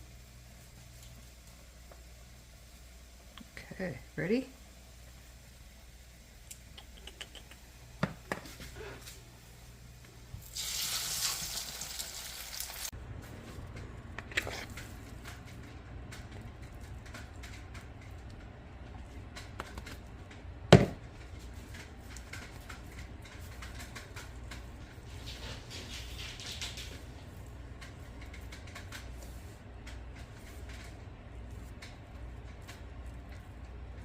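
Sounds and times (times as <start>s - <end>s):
tortillas frying in grease: 10.4s - 34.0s.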